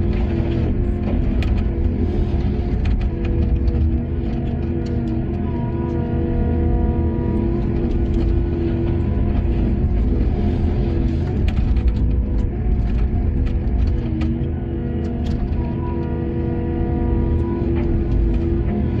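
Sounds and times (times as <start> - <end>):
sharp clicks and knocks: 0.0 - 6.0, 7.3 - 16.1
diesel machinery rumbling: 0.0 - 19.0.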